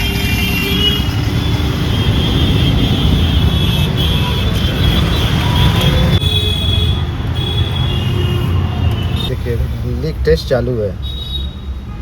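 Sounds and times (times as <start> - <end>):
vehicle engine rumbling: 0.0 - 11.4.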